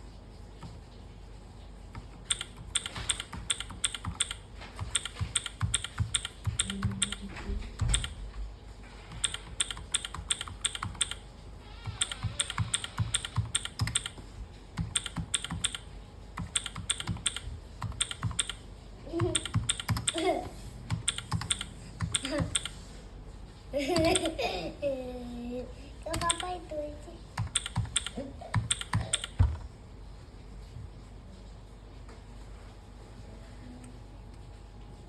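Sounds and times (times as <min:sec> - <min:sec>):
mechanical keyboard typing: 0:01.9 - 0:08.3, 0:09.1 - 0:18.6, 0:19.2 - 0:22.8, 0:24.0 - 0:24.3, 0:26.1 - 0:26.6, 0:27.4 - 0:29.6.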